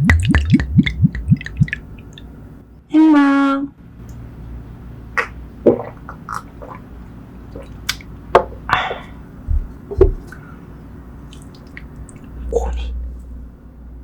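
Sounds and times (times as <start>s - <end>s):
low thumps: 0.0s - 1.8s, 9.4s - 10.3s
gulps of a drink: 5.2s - 6.9s
lip smacks and clicks: 11.3s - 12.4s.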